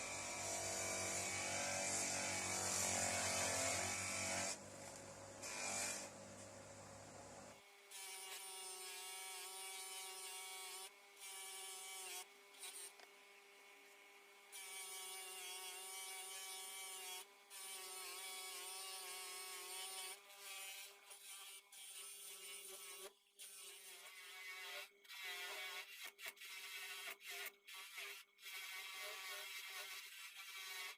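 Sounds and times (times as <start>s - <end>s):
bench grinder whining: 0.0s - 7.4s.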